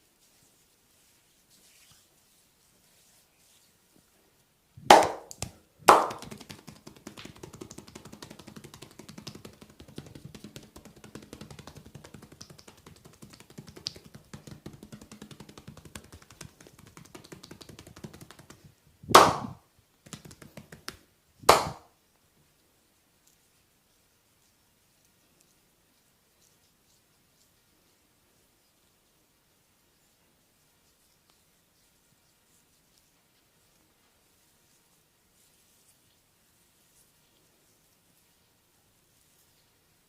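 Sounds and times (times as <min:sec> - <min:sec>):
light tapping and rubbing on skin: 0:00.2 - 0:04.2, 0:04.8 - 0:21.9, 0:23.2 - 0:29.2, 0:29.9 - 0:39.8
loud slaps on bare back: 0:04.8 - 0:12.5, 0:19.1 - 0:21.9.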